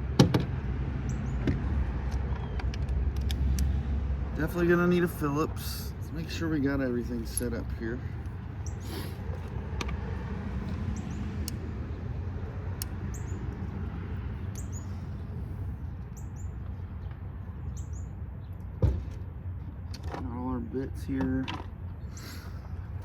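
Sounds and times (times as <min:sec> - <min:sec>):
bird chirping: 0:10.8 - 0:11.4, 0:13.0 - 0:13.6, 0:14.4 - 0:15.4.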